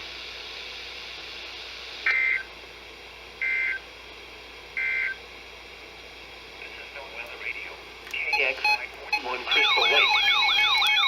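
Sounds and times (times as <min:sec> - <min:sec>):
radio hiss: 0:00.0 - 0:02.4, 0:06.6 - 0:10.4
two-tone data bursts: 0:08.2 - 0:11.0.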